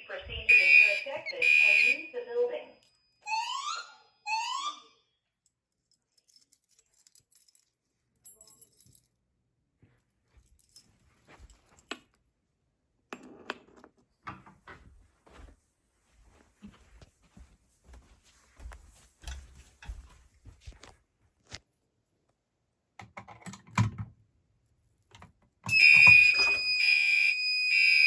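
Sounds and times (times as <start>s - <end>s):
fire alarm whoop tone: 0.5s - 2.2s, 3.2s - 5.1s, 25.7s - 28.0s
light clicks and rattles: 19.2s - 21.0s.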